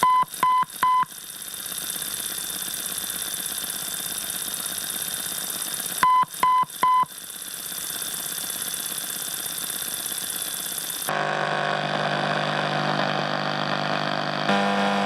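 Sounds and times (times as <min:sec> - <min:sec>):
radio interference hiss: 0:10.6 - 0:15.0.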